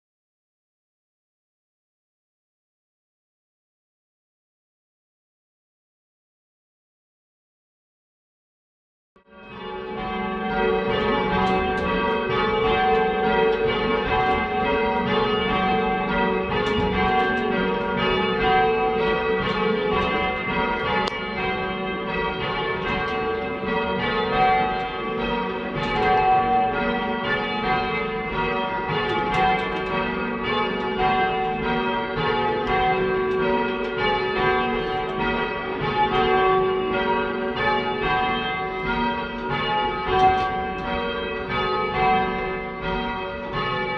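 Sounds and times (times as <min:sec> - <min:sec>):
church bells ringing: 0:09.3 - 0:43.9.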